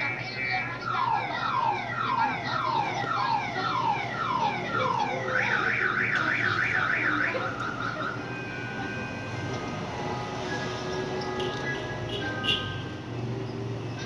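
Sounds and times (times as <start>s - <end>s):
car alarm: 0.0s - 9.4s, 11.3s - 12.9s.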